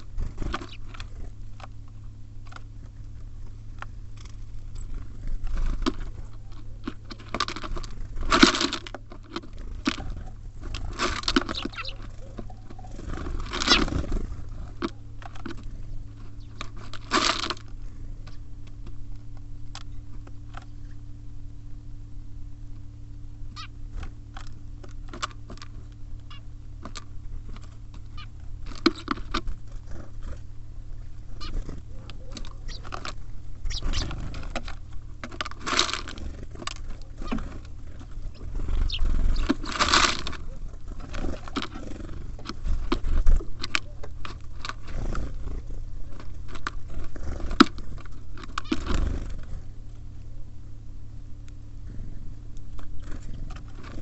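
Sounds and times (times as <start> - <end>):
birds fluttering: 0.0 - 21.4, 23.4 - 50.6, 51.7 - 54.0
beaks tapping on feeder: 0.4 - 2.7, 5.8 - 17.2, 23.5 - 29.6, 31.3 - 45.5.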